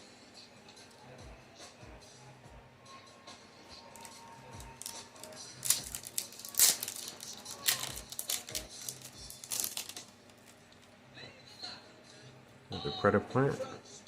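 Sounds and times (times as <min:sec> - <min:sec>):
cards rustling: 0:03.9 - 0:10.9
foil wrapper crinkling: 0:03.9 - 0:10.9.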